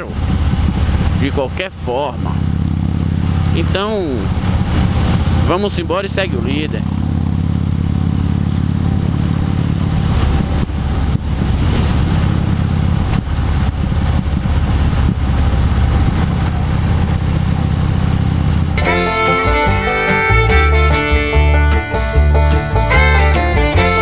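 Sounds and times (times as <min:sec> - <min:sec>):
banjo and fiddle music: 0:18.8 - 0:24.0.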